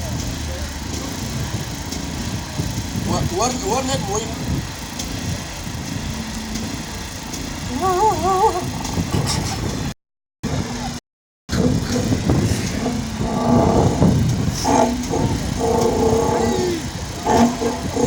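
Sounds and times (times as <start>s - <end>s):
man imitating truck engine: 7.6s - 9.9s, 10.7s - 18.0s.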